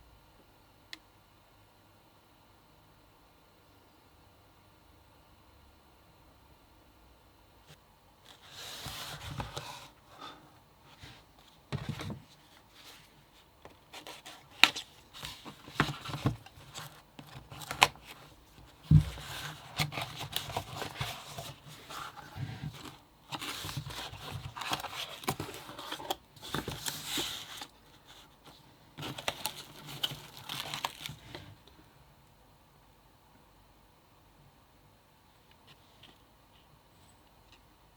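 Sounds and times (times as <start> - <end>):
plastic crinkling and rustling: 11.0 - 31.6.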